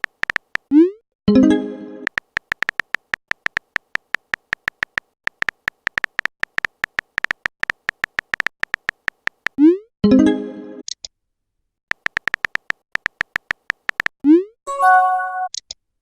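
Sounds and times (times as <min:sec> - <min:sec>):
electronic typing beeps: 0:11.9 - 0:14.1.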